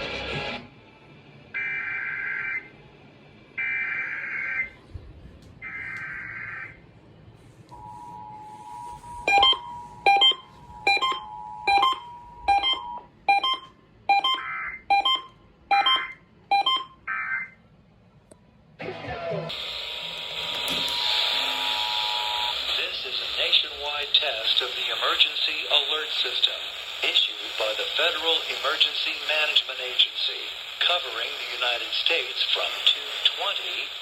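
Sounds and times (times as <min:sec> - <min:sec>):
two-tone attention signal: 0:07.7 - 0:16.9, 0:20.7 - 0:22.6
sharp beep: 0:07.8 - 0:17.0.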